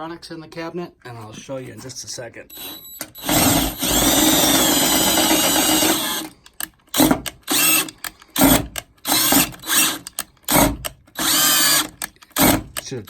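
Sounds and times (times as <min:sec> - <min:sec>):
power drill running: 0:02.5 - 0:12.8.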